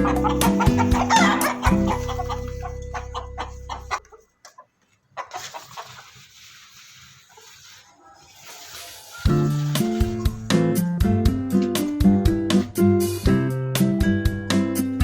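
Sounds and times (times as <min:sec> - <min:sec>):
background music: 0:00.0 - 0:04.0, 0:08.9 - 0:15.0
chickens clucking: 0:00.0 - 0:10.9.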